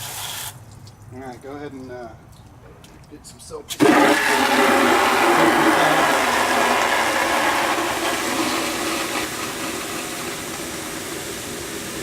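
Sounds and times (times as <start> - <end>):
hose water running into bucket: 3.7 - 12.0.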